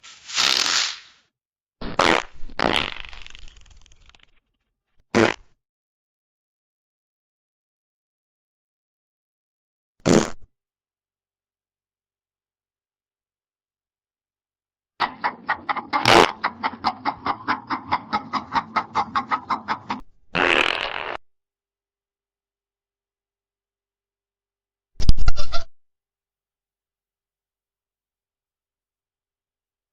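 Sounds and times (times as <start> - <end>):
short hissing fart: 0.0 - 1.2, 1.8 - 3.4, 5.1 - 5.5, 10.0 - 10.5, 20.4 - 21.2
fart sound effects: 1.8 - 4.2, 5.1 - 5.6, 10.0 - 10.5, 15.0 - 21.3.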